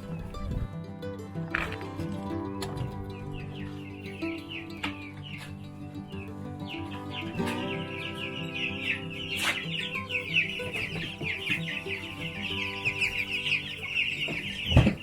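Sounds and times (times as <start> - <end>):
chickens clucking and chirping: 0.0 - 0.7, 1.5 - 15.0
background music: 0.0 - 15.0.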